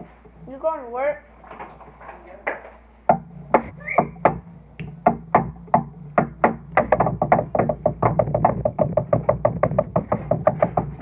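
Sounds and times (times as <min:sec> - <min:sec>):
steady low tone: 0:03.0 - 0:11.0
music with clicking beat: 0:03.1 - 0:11.0.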